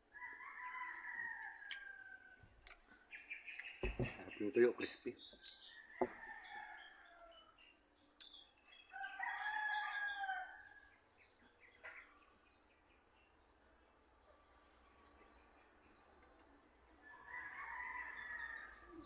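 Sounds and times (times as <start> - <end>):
rooster crowing: 0.1 - 2.4, 5.7 - 7.6, 8.9 - 10.8, 17.0 - 19.0
faint bird chirps: 0.2 - 13.4.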